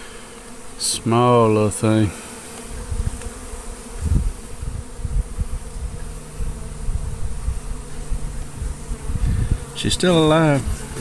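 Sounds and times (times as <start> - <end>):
bees buzzing: 0.0 - 11.0
low rumbles on microphone: 4.0 - 11.0.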